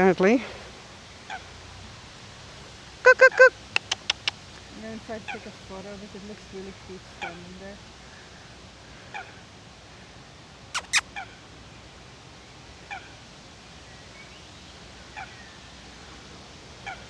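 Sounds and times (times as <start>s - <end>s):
coot honking calls: 3.0s - 4.4s, 10.8s - 11.0s
sharp clicks: 3.7s - 4.4s, 10.8s - 11.0s.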